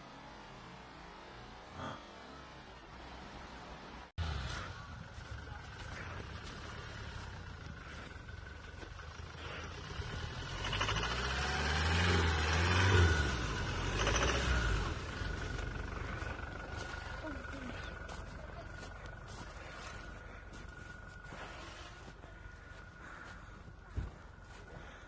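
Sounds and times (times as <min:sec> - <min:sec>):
car engine revving: 0:04.2 - 0:25.0
low rumble: 0:13.1 - 0:25.0.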